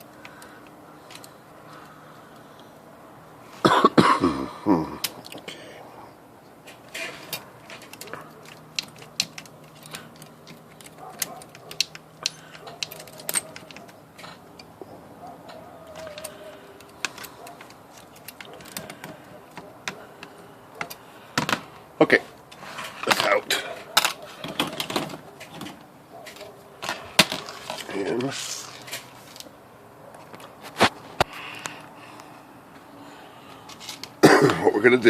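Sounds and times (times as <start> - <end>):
person coughing: 3.6 - 5.0, 34.2 - 34.8
metallic clicks and taps: 7.3 - 14.7.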